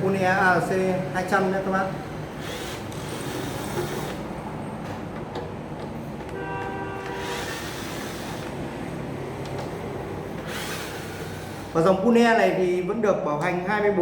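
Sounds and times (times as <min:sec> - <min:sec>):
traffic noise: 0:00.0 - 0:14.0
car horn: 0:06.3 - 0:07.7.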